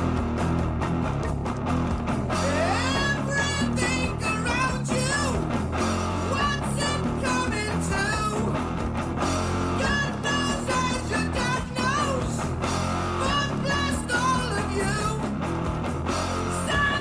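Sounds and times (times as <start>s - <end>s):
bass: 0.0s - 17.0s
electric guitar: 0.0s - 17.0s
person singing: 2.3s - 5.5s, 6.2s - 8.6s, 9.8s - 12.5s, 13.2s - 15.3s, 16.5s - 17.0s.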